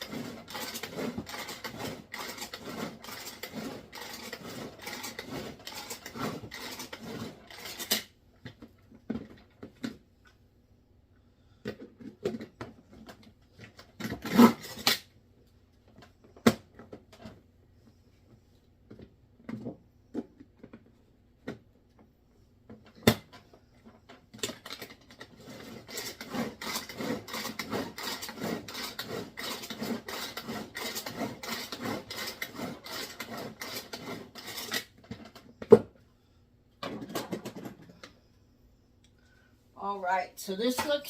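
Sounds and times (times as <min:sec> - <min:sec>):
utensil scraping in a bowl: 0:00.0 - 0:08.0, 0:25.2 - 0:34.9.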